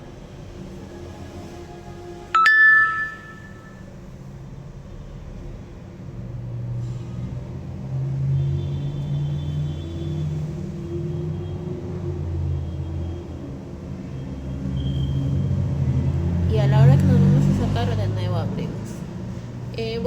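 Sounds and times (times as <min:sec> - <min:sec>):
bright ding: 0:02.4 - 0:03.8.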